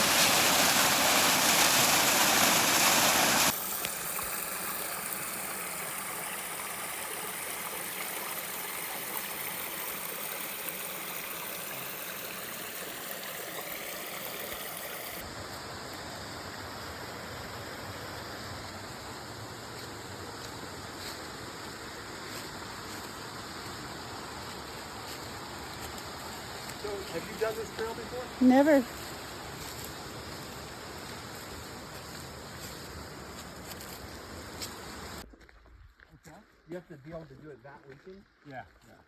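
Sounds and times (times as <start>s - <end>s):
stream water rushing over rocks: 0.0s - 20.6s.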